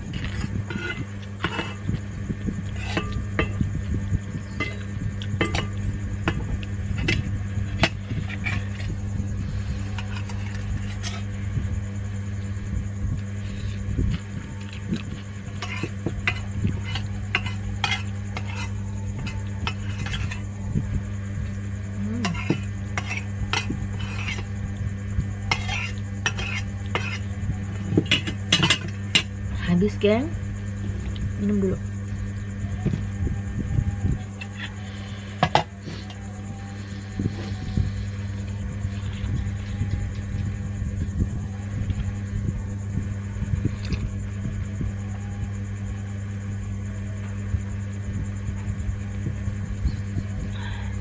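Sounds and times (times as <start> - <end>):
spoon scraping a bowl: 0.0 - 2.0, 2.6 - 3.7, 4.5 - 11.4, 14.6 - 20.6, 22.2 - 24.5, 25.5 - 29.3, 34.3 - 36.2
electric fan humming: 0.0 - 51.0.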